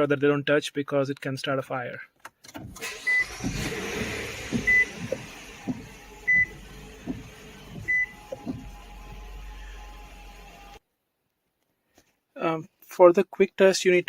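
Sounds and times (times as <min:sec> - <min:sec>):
car warning chime beeps: 0:02.8 - 0:08.7
soft knocks: 0:04.4 - 0:08.8.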